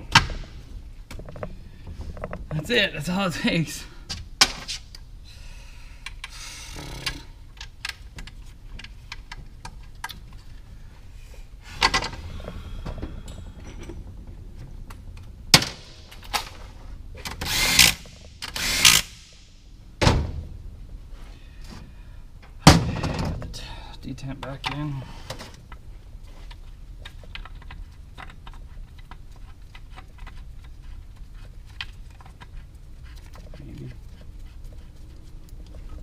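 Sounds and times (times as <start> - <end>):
heavy thud: 22.6 - 23.4.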